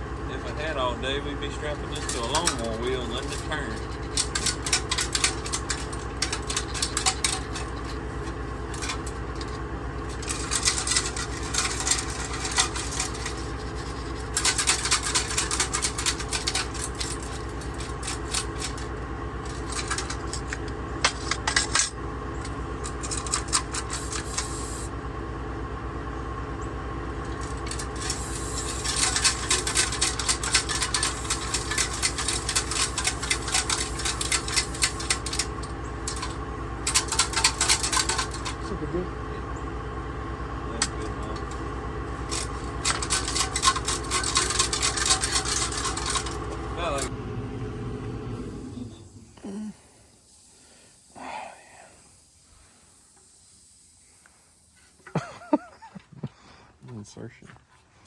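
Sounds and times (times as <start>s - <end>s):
steady low hum: 0.0s - 58.0s
rocks rattling in metal tank: 27.2s - 38.7s, 42.2s - 47.0s.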